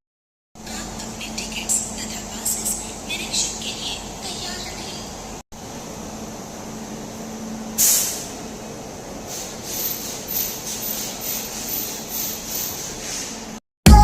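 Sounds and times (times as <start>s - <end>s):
short loud hiss: 7.8s - 8.4s.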